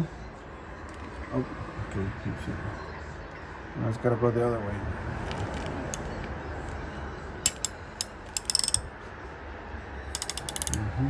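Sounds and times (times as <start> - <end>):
ratchet wrench clicking: 7.5 - 8.9, 10.2 - 10.8.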